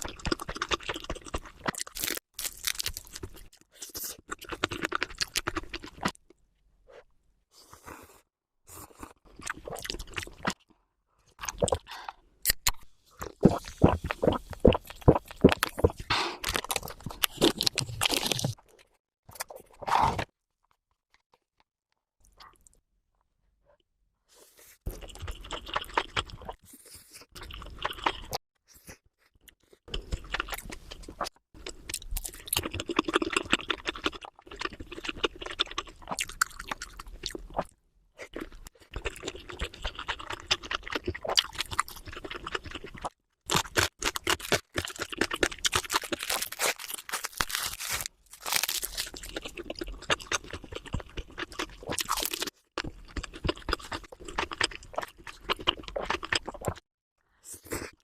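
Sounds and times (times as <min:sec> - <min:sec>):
chewing and crunching food: 0:00.0 - 0:56.8.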